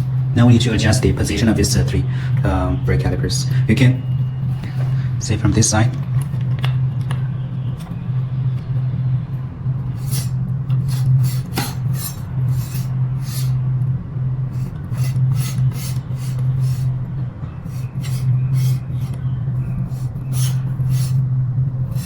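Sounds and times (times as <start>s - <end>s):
steady low hum: 0.0s - 22.0s
brake disc scraping: 9.8s - 13.6s, 14.5s - 21.2s.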